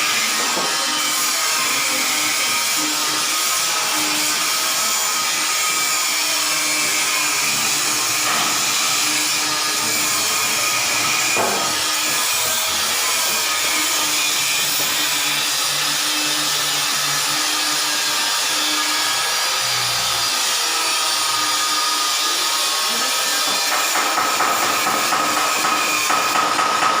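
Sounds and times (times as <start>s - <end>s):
power tool running: 0.0s - 27.0s
rapid repeated knocks: 23.5s - 27.0s.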